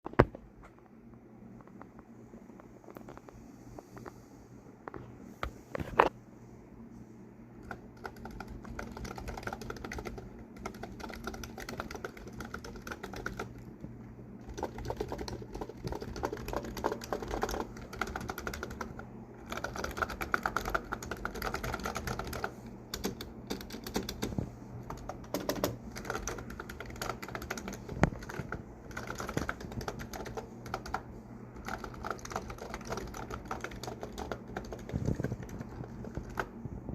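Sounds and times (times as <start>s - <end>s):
keyboard typing: 7.6s - 13.8s, 14.4s - 36.6s.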